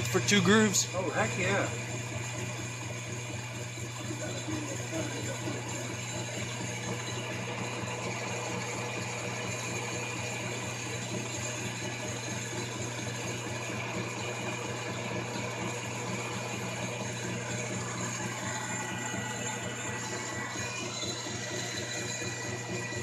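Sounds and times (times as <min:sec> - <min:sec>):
metal lathe humming: 0:00.0 - 0:23.0.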